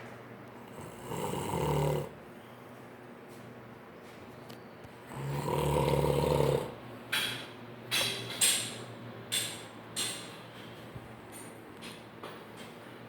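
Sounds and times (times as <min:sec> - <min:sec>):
man snoring: 0:00.7 - 0:02.2, 0:05.1 - 0:06.8.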